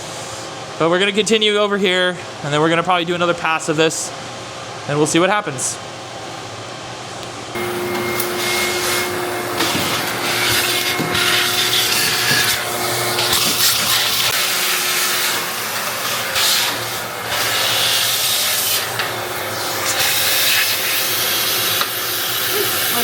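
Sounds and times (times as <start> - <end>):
vacuum cleaner running: 7.3 - 23.0.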